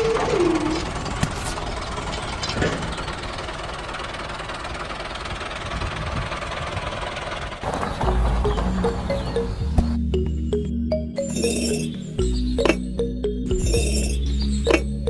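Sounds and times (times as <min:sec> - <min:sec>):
background music: 0:07.9 - 0:15.0.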